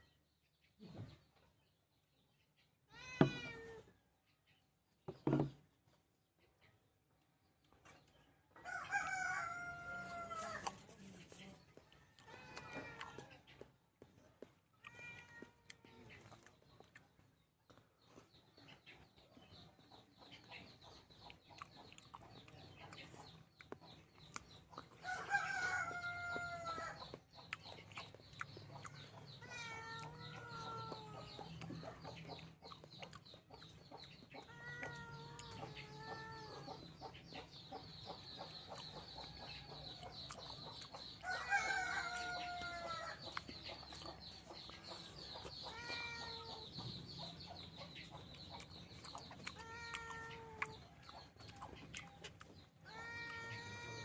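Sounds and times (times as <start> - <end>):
rooster crowing: 8.6 - 10.5, 25.1 - 27.0, 41.2 - 43.2.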